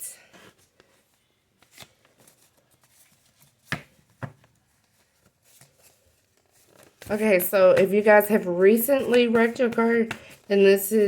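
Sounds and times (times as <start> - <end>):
cards rustling: 0.3 - 11.0.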